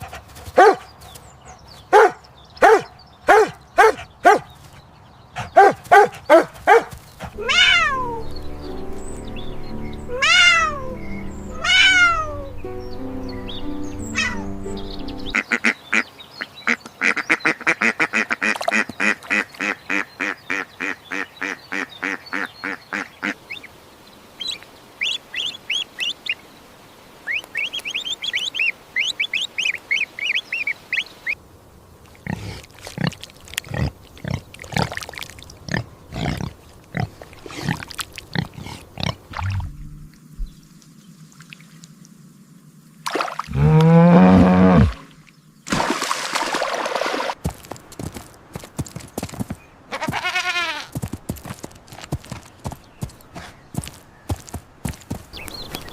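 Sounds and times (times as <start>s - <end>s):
recorded animal calls: 5.4s - 8.4s, 10.0s - 12.6s.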